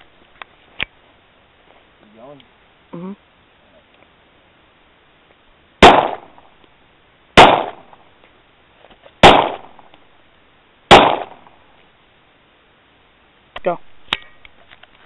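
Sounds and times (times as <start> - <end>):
pistol shots with echo: 5.8 - 6.4, 7.4 - 8.0, 9.2 - 9.9, 10.9 - 11.6.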